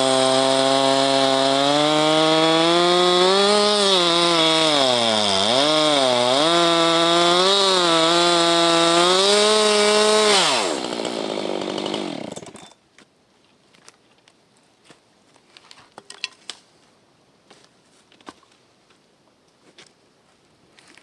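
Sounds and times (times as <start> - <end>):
chainsaw cutting wood: 0.0 - 12.8.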